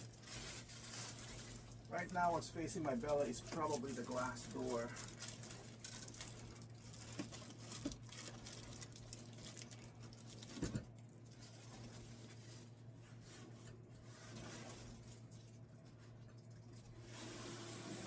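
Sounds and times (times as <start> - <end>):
steady low hum: 0.0 - 7.1
packaging rustling: 0.1 - 12.4.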